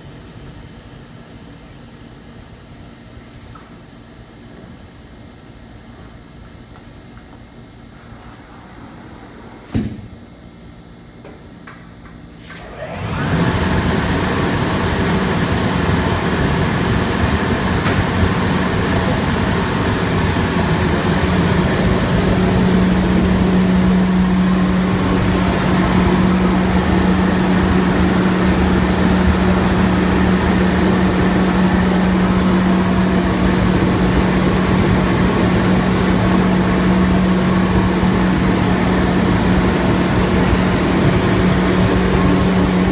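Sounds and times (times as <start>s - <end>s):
blower machine rushing: 12.5s - 42.9s
steady low hum: 14.6s - 42.9s.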